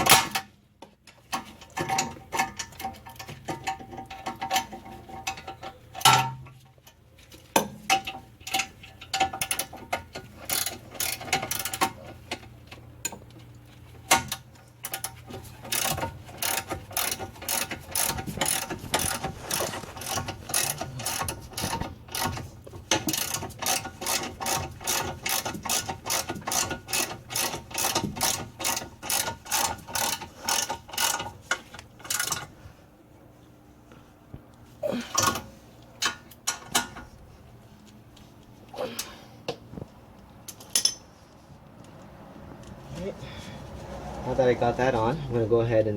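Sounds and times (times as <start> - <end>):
ratchet wrench clicking: 8.5 - 12.0, 14.3 - 31.4.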